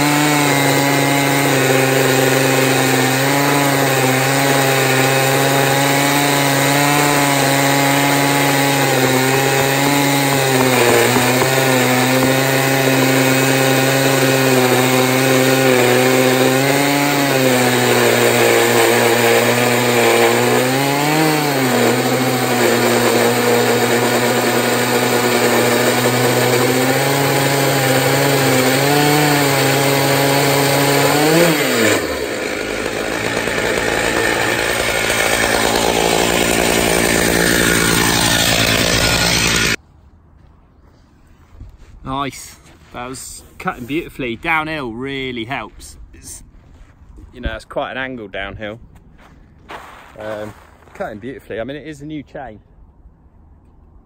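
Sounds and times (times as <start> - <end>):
chainsaw cutting log: 0.0 - 39.8, 49.7 - 51.4.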